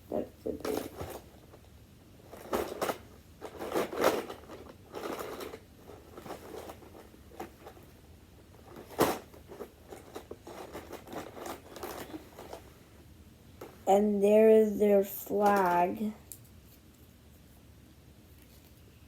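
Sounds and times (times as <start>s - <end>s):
plastic toys scraping and clicking: 0.4s - 1.6s, 2.2s - 12.7s, 15.0s - 16.9s
packaging rustling: 2.3s - 12.7s.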